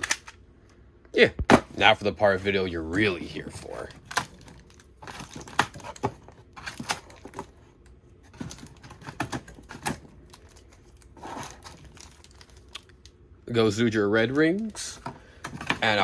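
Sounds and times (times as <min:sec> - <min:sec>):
packaging clicks and crinkles: 0:04.0 - 0:07.6, 0:08.3 - 0:13.2.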